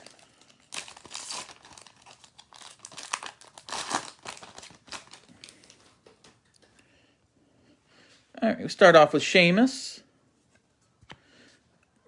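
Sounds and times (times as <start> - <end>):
card pack wrapper tearing and crinkling: 0.0 - 5.7.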